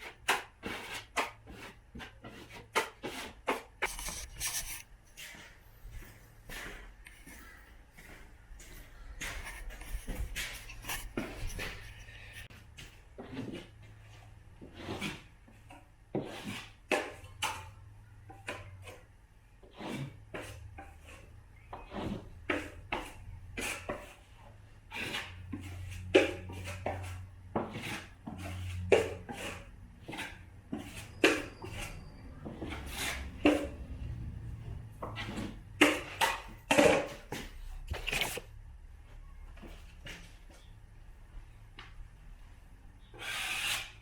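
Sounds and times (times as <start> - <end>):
taping knife scraping compound: 0.0 - 5.6, 8.9 - 17.8, 19.6 - 33.8, 43.0 - 44.0.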